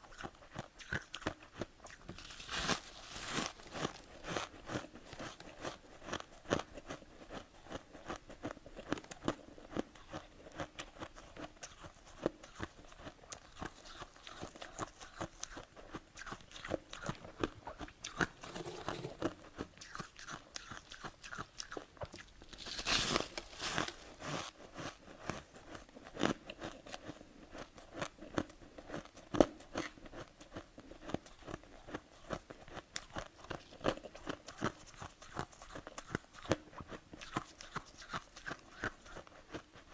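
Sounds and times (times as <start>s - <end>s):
chewing crunchy frost: 0.0s - 39.9s.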